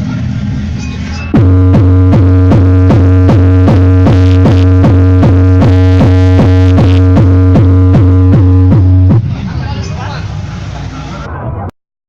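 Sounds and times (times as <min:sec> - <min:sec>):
loud electronic bass music: 0:01.3 - 0:09.8.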